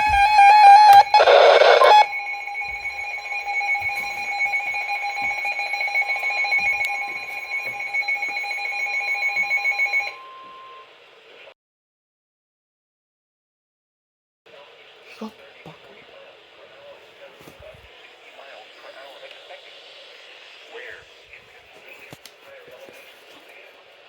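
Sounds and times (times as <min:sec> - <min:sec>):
electronic alarm tone: 0:00.0 - 0:11.0.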